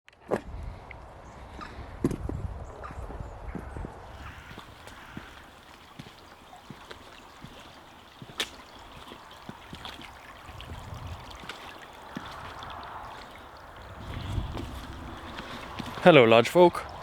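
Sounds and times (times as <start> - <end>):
stream running: 4.1 - 17.0.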